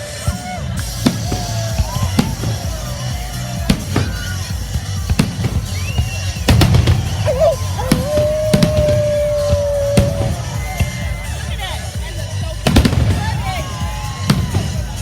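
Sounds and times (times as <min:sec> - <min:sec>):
fireworks bangs: 0:00.9 - 0:11.1, 0:12.6 - 0:13.5
whistle-like tone: 0:05.7 - 0:06.5, 0:07.2 - 0:11.4.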